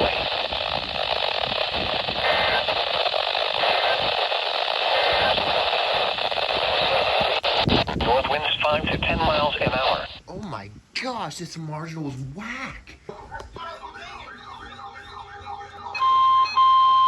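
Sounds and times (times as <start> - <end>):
radio static hiss: 0.0 - 10.2, 11.0 - 17.0.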